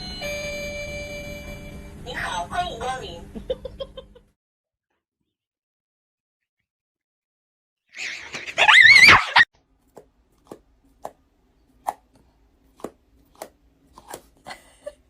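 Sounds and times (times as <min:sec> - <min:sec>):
animal call with wavering pitch: 0:08.0 - 0:09.5.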